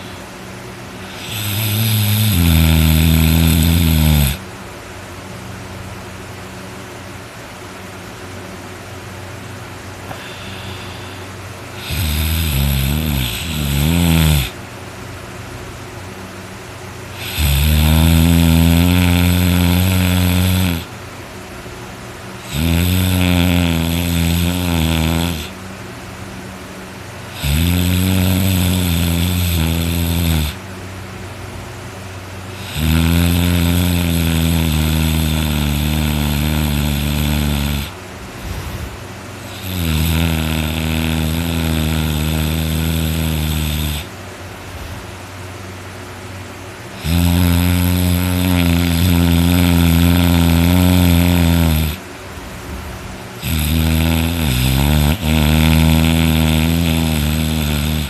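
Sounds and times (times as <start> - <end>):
person snoring loudly: 0.0 - 0.3, 1.0 - 4.5, 10.0 - 14.6, 17.1 - 20.9, 22.4 - 25.6, 27.3 - 30.6, 32.5 - 44.1, 46.9 - 52.0, 53.4 - 58.0.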